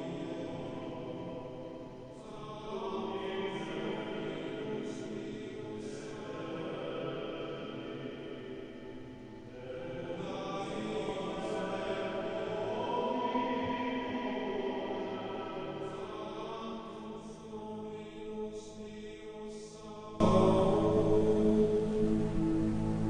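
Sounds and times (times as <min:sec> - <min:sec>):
voices chanting sustained notes: 0:00.0 - 0:23.0.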